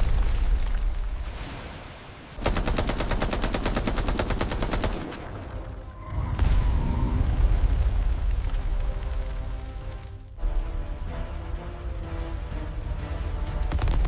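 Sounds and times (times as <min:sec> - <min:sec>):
rapid automatic gunfire: 0:02.4 - 0:05.2.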